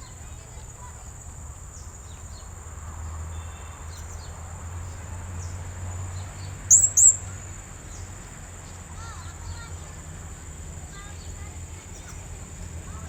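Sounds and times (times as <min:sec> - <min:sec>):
insects droning: 0:00.0 - 0:13.0
faint high chirps: 0:06.4 - 0:08.4.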